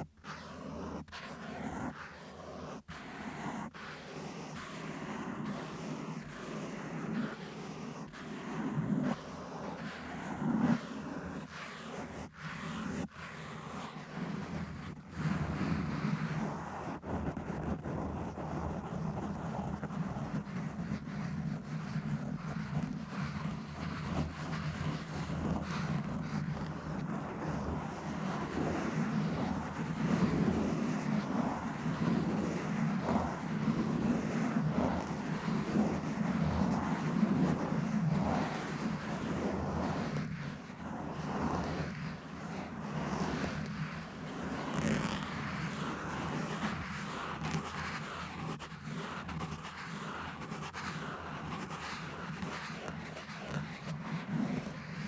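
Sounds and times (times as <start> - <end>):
scratching on microphone: 13.8 - 55.0.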